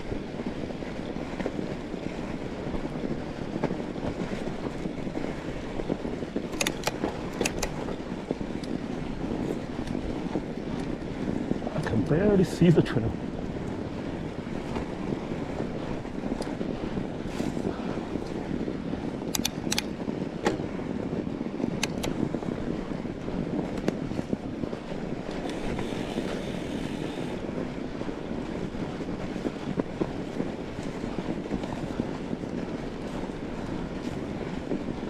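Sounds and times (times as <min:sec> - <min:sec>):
bike tyres rolling on snow: 0:00.0 - 0:35.0
wind on microphone: 0:00.0 - 0:35.0
sharp bike clicks: 0:06.5 - 0:07.8, 0:19.3 - 0:19.9, 0:21.8 - 0:22.2.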